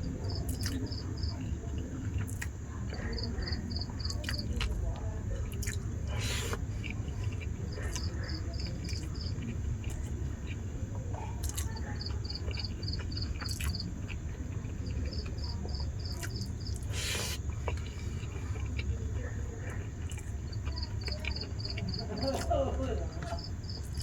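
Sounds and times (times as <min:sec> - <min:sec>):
insect chirping: 0:00.0 - 0:01.5, 0:03.1 - 0:04.4, 0:06.1 - 0:09.4, 0:14.8 - 0:24.0
steady low hum: 0:00.0 - 0:24.0.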